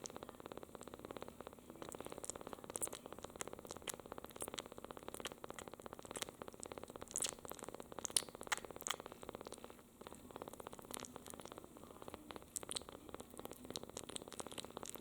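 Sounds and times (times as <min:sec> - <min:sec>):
kitten purring: 0:00.0 - 0:15.0
wet mouth clicks and smacks: 0:07.1 - 0:07.4, 0:08.0 - 0:09.1.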